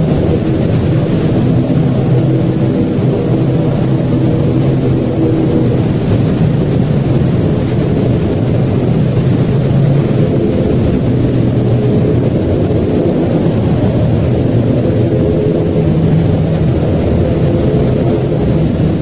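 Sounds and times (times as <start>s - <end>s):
low rumbling drone: 0.0s - 19.0s.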